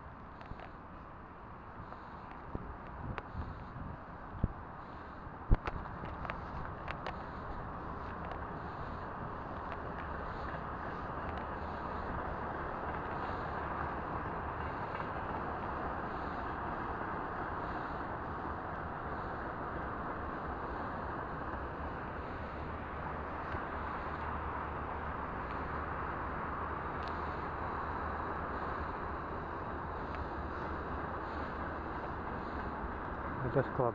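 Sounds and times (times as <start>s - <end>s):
low hum: 0.0s - 33.9s
rushing outdoor noise: 0.0s - 33.9s
faint soft ticks: 27.0s - 27.2s.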